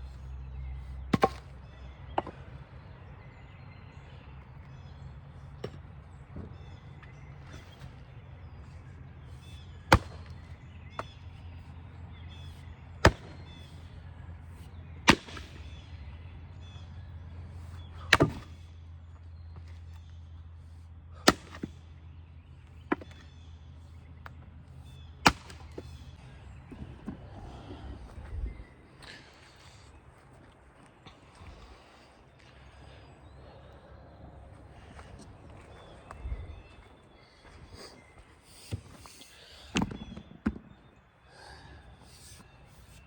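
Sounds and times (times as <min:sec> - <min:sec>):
axe striking wood: 0:01.1 - 0:01.5, 0:09.9 - 0:11.1, 0:13.0 - 0:13.5, 0:15.1 - 0:15.7, 0:18.1 - 0:18.6, 0:21.2 - 0:21.7, 0:25.2 - 0:25.9.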